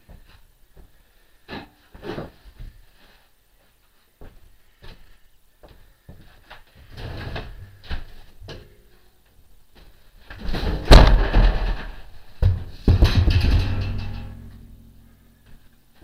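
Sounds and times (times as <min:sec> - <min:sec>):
loud clattering bang: 0:10.5 - 0:12.1.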